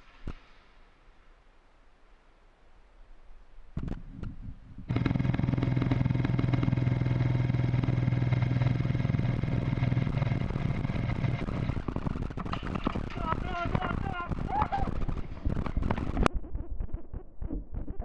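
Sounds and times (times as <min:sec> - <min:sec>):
sharp clicks: 0:03.8 - 0:16.3.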